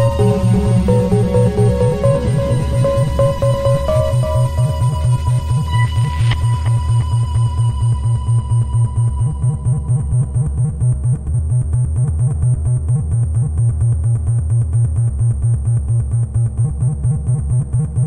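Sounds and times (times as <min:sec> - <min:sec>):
repeating high synth tone: 0:00.0 - 0:06.0
pulsing synth bass: 0:00.0 - 0:18.0.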